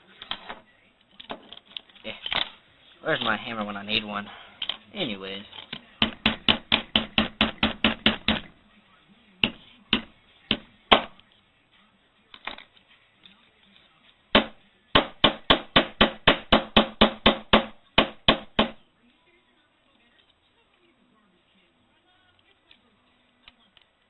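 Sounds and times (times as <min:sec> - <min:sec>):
tool knocking on phone: 0:06.0 - 0:08.5, 0:09.4 - 0:11.1, 0:14.4 - 0:18.8.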